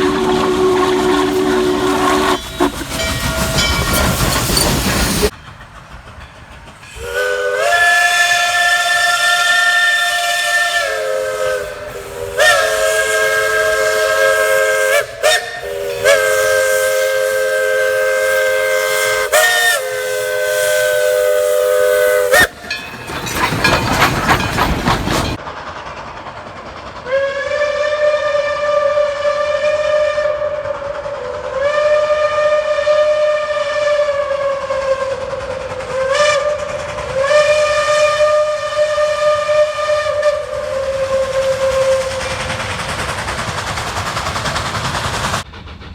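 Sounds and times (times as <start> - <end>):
single-note locomotive whistle: 0.0 - 4.0, 6.9 - 22.7, 27.1 - 30.9, 35.9 - 42.3
steam locomotive chime whistle: 0.0 - 5.3, 6.8 - 24.0, 27.0 - 42.7.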